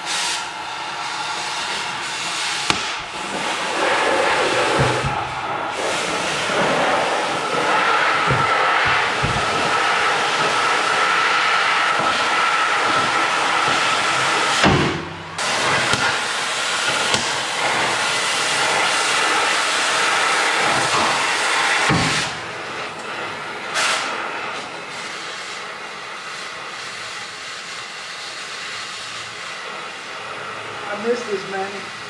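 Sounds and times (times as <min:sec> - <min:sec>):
gas torch hissing roar: 0:00.0 - 0:32.0.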